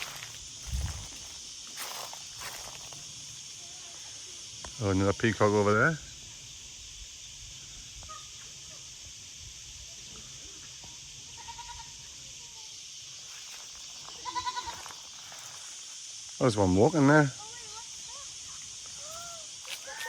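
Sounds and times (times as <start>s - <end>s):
faint high hiss: 0.0s - 20.0s
goat bleating: 14.2s - 14.8s.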